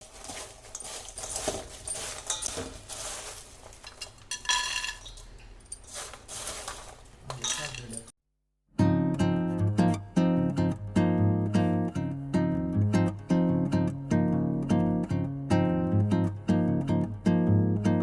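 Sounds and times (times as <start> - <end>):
metal utensils clinking on pans: 0.2 - 8.1.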